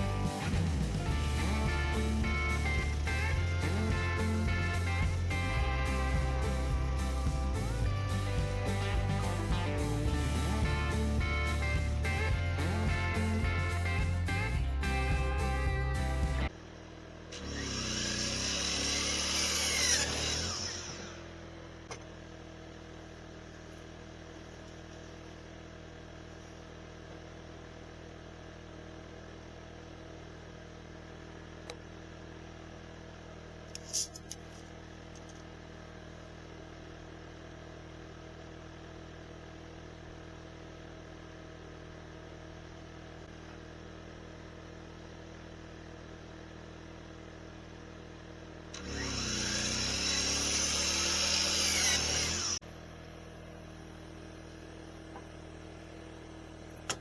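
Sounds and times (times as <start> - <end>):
sawmill running: 0.0 - 25.4, 43.3 - 57.0.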